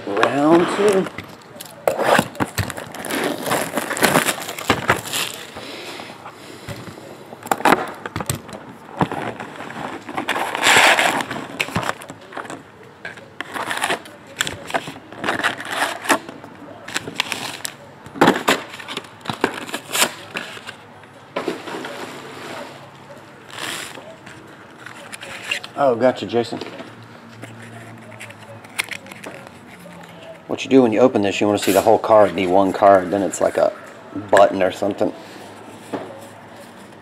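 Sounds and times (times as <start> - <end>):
wrappers crinkling and tearing: 0.4 - 6.2, 8.6 - 12.6, 13.3 - 20.8, 23.3 - 30.6
cards being shuffled: 26.8 - 30.4.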